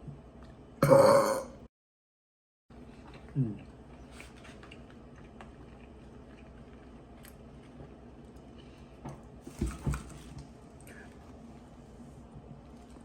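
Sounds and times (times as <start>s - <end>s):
man chewing food: 2.8s - 9.4s.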